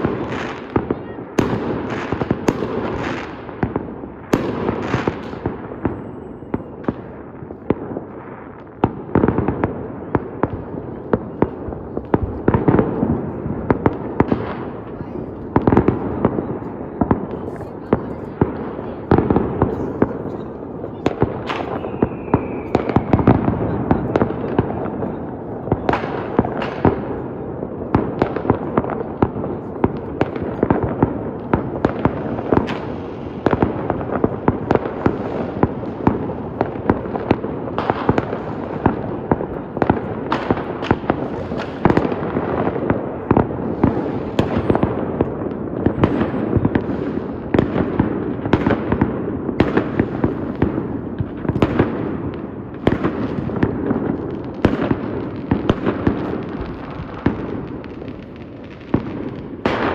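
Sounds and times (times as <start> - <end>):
fireworks bangs and crackles: 0.0 - 59.9
falling firework whistle: 21.4 - 23.7.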